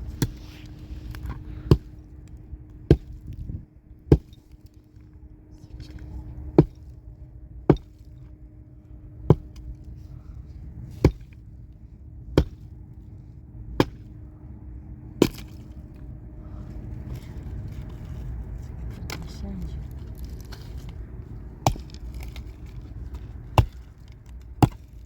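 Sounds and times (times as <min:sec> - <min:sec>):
axe chopping wood: 0:00.1 - 0:00.5, 0:01.7 - 0:01.9, 0:02.9 - 0:03.4, 0:04.1 - 0:04.4, 0:06.6 - 0:06.9, 0:07.7 - 0:08.1, 0:09.3 - 0:09.7, 0:10.9 - 0:11.4, 0:12.4 - 0:12.7, 0:13.8 - 0:14.1, 0:15.2 - 0:15.6, 0:21.6 - 0:22.5, 0:23.6 - 0:25.0.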